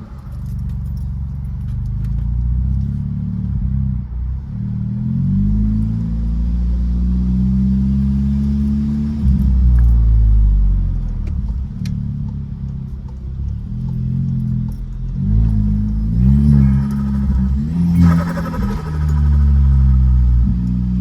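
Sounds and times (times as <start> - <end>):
car engine revving: 13.6 - 21.0
turbo flutter: 15.6 - 21.0.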